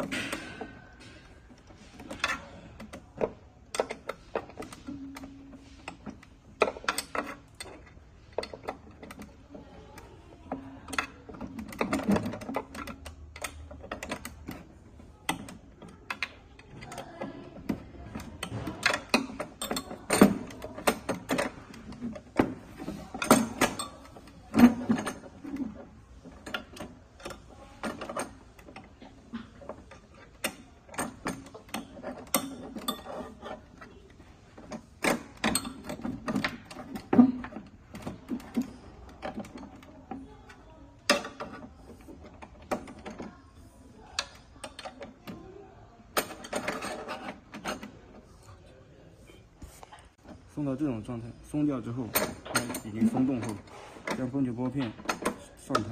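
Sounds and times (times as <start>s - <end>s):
hand tools and metal parts clicking: 0.0s - 48.5s, 49.7s - 55.9s.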